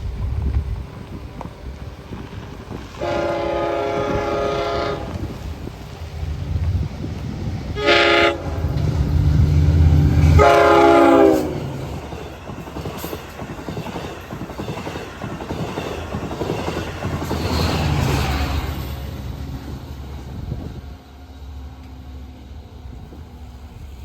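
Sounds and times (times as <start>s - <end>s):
train rumbling over rails: 0.0s - 24.0s
train horn blasts: 3.0s - 5.4s, 7.7s - 11.8s
locomotive engine running: 5.4s - 12.8s.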